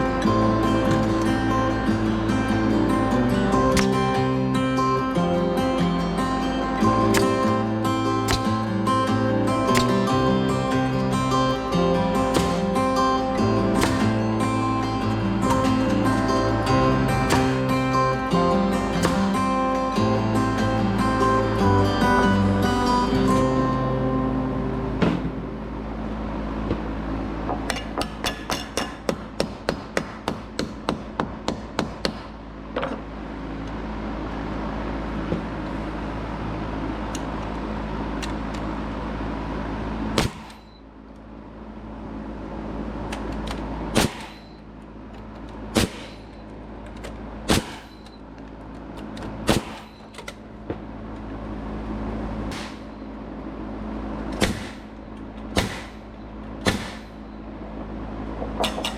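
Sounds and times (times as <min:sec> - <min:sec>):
constant low hum: 0:00.0 - 0:58.9
hammer striking wood: 0:07.0 - 0:07.6, 0:08.2 - 0:08.7, 0:09.7 - 0:10.3, 0:12.2 - 0:12.9, 0:13.8 - 0:14.4, 0:17.1 - 0:17.9, 0:19.0 - 0:19.6, 0:27.5 - 0:33.0, 0:40.2 - 0:40.7, 0:45.8 - 0:46.3, 0:52.5 - 0:52.9, 0:54.4 - 0:54.9, 0:55.6 - 0:56.0, 0:56.6 - 0:57.2.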